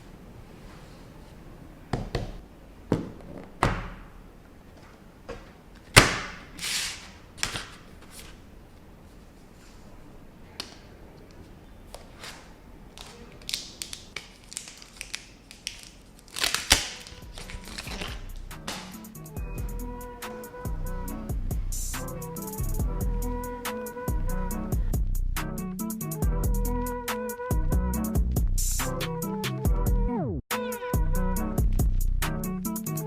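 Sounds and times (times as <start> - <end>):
packaging rustling: 12.3 - 18.8.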